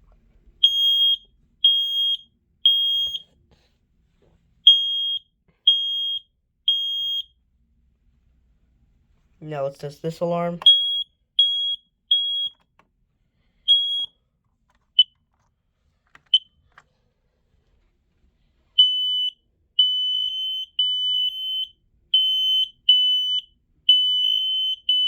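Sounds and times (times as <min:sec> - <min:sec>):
smoke alarm beeping: 0:00.6 - 0:03.3, 0:04.6 - 0:07.4, 0:10.6 - 0:12.6, 0:13.6 - 0:14.2, 0:18.8 - 0:25.0.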